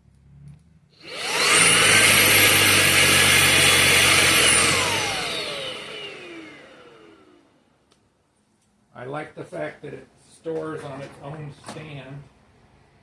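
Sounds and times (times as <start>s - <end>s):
vacuum cleaner motor whining: 1.0s - 7.7s.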